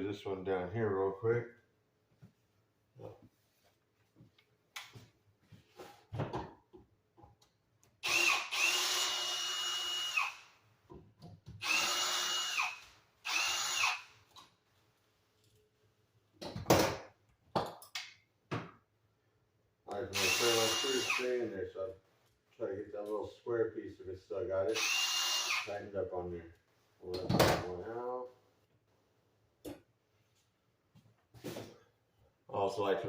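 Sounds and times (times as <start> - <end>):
power drill whining: 8.0 - 10.6, 11.6 - 14.2, 20.2 - 21.4, 24.7 - 25.7.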